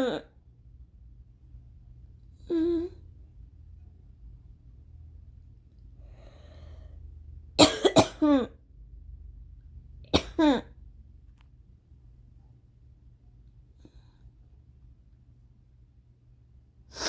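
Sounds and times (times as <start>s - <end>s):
faint inhale: 6.0s - 7.2s, 13.8s - 14.4s
woman coughing hard: 7.6s - 8.6s, 10.1s - 10.8s.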